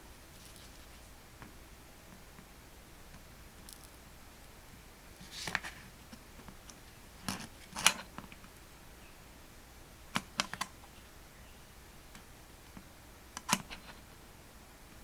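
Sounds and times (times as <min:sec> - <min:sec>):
small objects clicking and tapping: 0:03.6 - 0:04.0.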